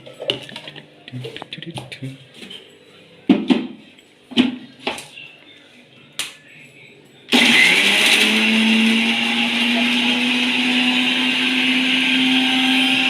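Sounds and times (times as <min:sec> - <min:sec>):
mixer grinder motor whine: 0:07.3 - 0:13.0.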